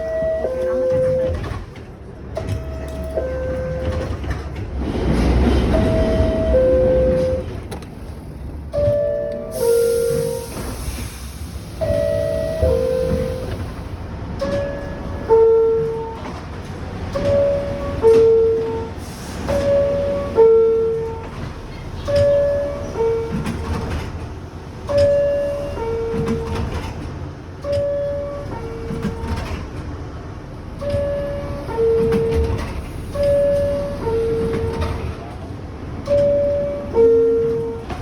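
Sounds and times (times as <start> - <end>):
two-tone door chime: 0.0 - 1.6, 2.4 - 4.4, 5.7 - 7.5, 8.8 - 10.6, 11.8 - 13.6, 14.4 - 16.3, 17.2 - 18.9, 22.1 - 23.7, 27.6 - 29.4, 30.8 - 35.0, 36.0 - 38.0
low rumble of a train: 0.0 - 38.0.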